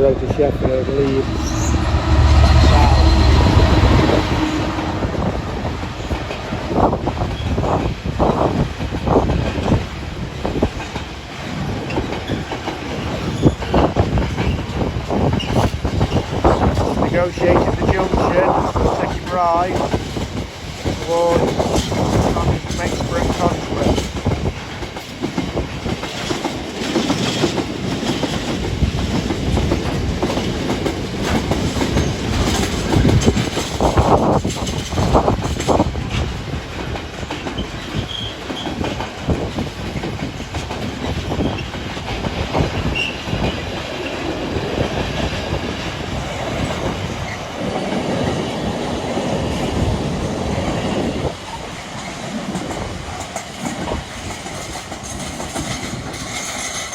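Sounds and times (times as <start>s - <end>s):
train wheels clattering: 0.4s - 56.9s.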